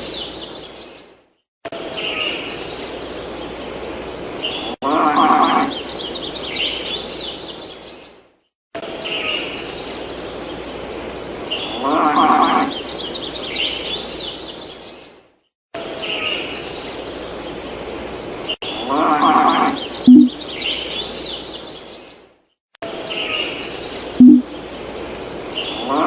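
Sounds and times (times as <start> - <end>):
birds chirping and twittering: 0.0 - 26.0
farm animal bleating: 18.9 - 19.8
loud low tones: 20.1 - 20.4, 24.2 - 24.5.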